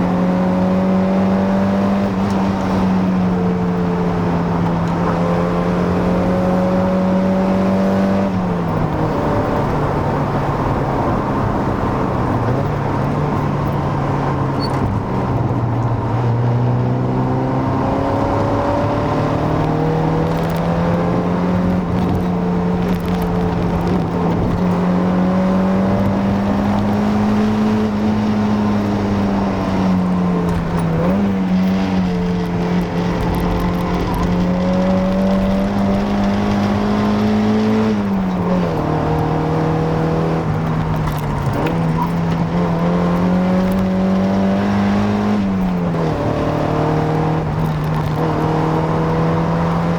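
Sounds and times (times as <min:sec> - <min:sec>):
car engine pulling through gears: 0:00.0 - 0:49.9.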